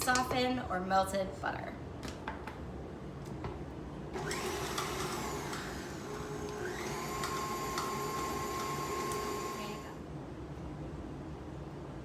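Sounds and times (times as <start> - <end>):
stand mixer motor whining: 4.2 - 10.0.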